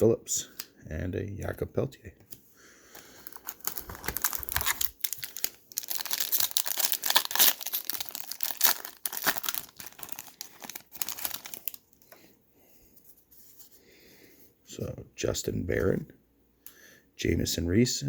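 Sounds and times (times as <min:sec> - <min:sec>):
wrapper tearing and crinkling: 0:03.0 - 0:11.8.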